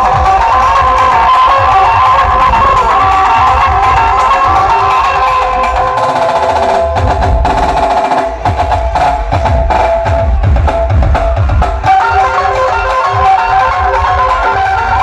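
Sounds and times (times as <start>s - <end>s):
electric banjo melody: 0.0s - 7.6s, 11.4s - 15.0s
drums: 0.0s - 15.0s
deep bass thumps: 6.8s - 11.9s.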